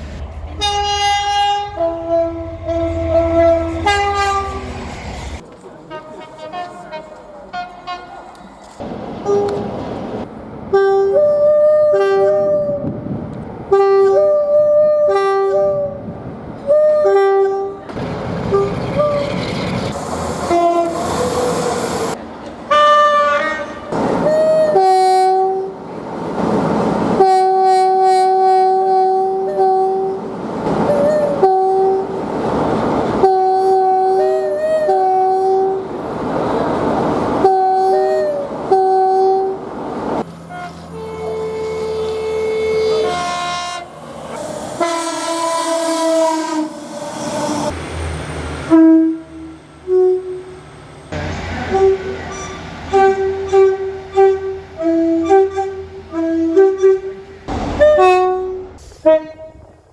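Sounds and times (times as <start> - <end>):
moving train noise: 0.0 - 59.9
steady single-tone horn: 0.6 - 4.8, 40.4 - 43.9, 44.8 - 46.8, 48.6 - 59.8
train two-tone horn blasts: 0.6 - 5.0, 5.8 - 8.3, 9.2 - 9.8, 10.7 - 13.1, 13.7 - 19.2, 20.4 - 21.8, 22.7 - 25.8, 27.2 - 32.2, 33.2 - 35.9, 37.4 - 39.6, 40.2 - 47.1, 48.6 - 59.8.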